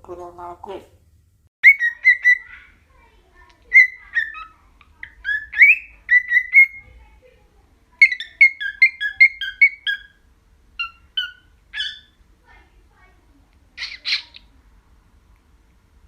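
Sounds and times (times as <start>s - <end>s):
pet bird whistling: 1.6s - 2.6s, 3.7s - 6.8s, 8.0s - 10.2s, 10.8s - 12.2s.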